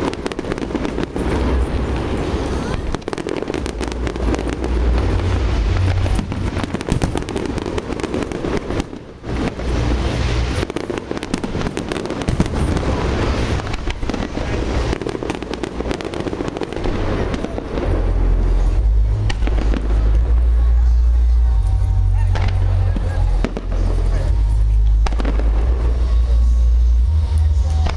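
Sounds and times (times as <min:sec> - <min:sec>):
low rumble: 0:00.0 - 0:10.7, 0:12.4 - 0:27.9
fireworks crackling and popping: 0:00.0 - 0:27.9.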